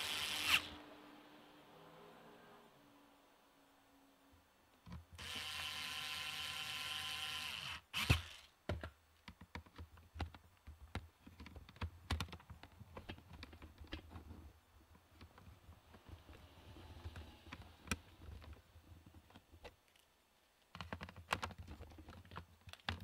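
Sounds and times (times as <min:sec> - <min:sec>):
small electric motor buzzing: 0:00.0 - 0:00.8, 0:05.2 - 0:08.5.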